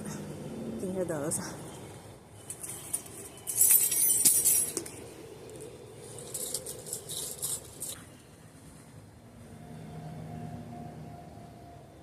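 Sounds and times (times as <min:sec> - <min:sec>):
keys jingling: 0:02.4 - 0:05.0, 0:06.0 - 0:08.0.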